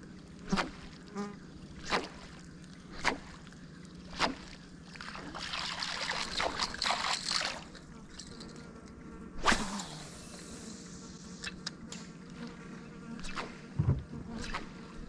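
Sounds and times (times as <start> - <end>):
lure spluttering across water: 0.4 - 10.2
lure splashing in water: 1.8 - 8.4.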